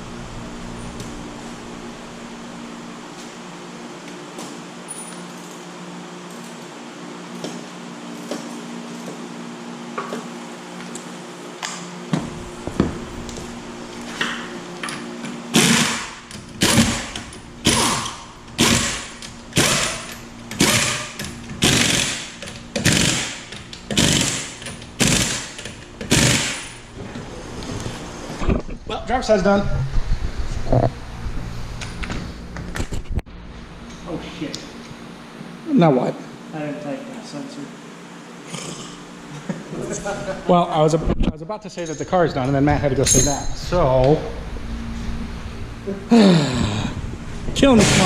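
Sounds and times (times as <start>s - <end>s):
steady low hum: 0.0s - 48.0s
impact wrench rattling bursts: 15.5s - 26.9s.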